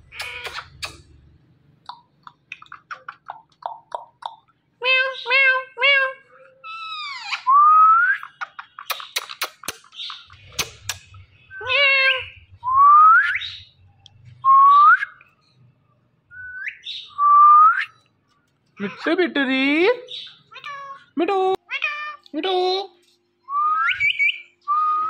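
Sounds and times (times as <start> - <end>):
parrot squawks: 0.0 - 0.9, 4.8 - 7.5
sharp clicks: 8.8 - 11.2.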